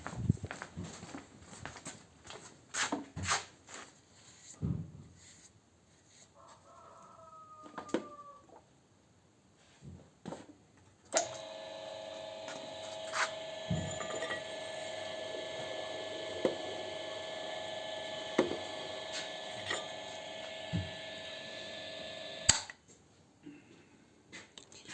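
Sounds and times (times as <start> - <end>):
boring machine humming: 11.1 - 22.7
switch click: 22.4 - 22.8.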